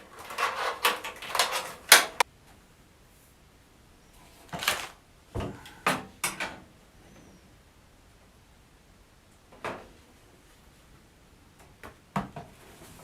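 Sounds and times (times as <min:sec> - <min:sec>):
handling noise inside computer case: 0:00.0 - 0:02.2, 0:04.2 - 0:07.2, 0:11.6 - 0:13.0.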